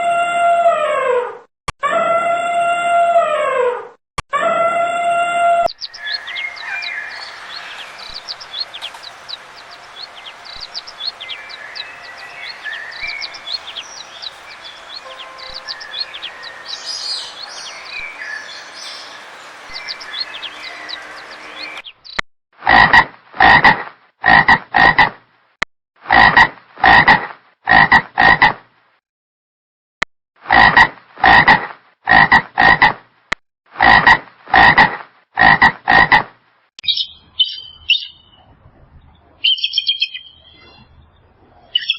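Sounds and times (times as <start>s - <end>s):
small birds chirping: 5.6s - 22.2s, 36.8s - 41.9s
frog croaking loudly: 22.6s - 25.1s, 33.8s - 36.2s.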